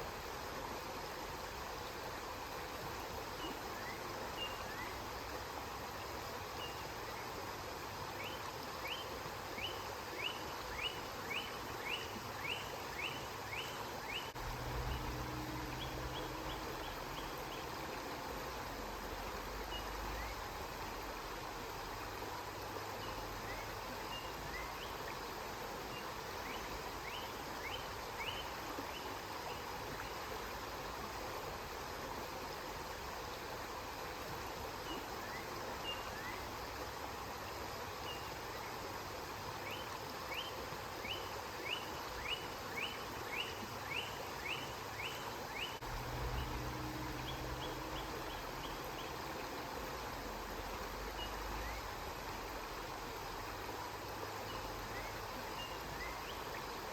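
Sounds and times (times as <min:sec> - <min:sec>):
river water flowing: 0:00.0 - 0:56.9
bird chirping: 0:09.6 - 0:17.8
low hum: 0:14.4 - 0:17.9, 0:45.8 - 0:49.3.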